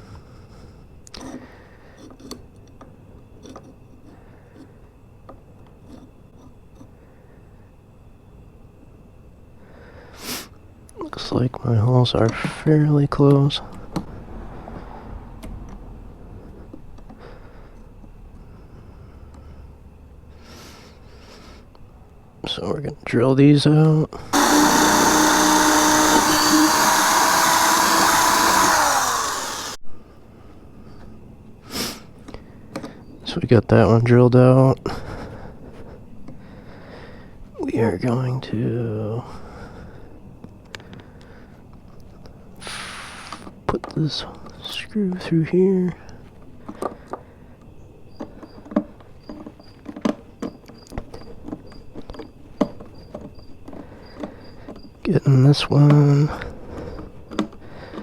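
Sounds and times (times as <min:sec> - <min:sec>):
electric drill boring: 0:24.3 - 0:29.8.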